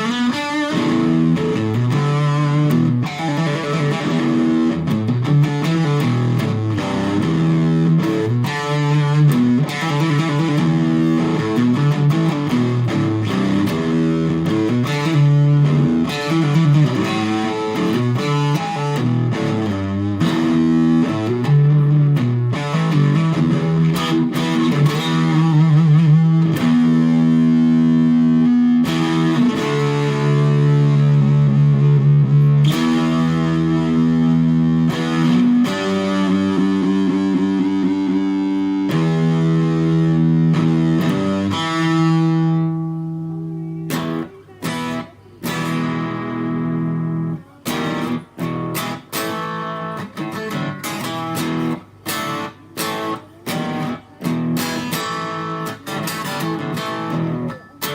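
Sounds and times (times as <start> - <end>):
choppy strummed guitar chords: 0.0 - 57.9
electric guitar chords: 0.0 - 57.9.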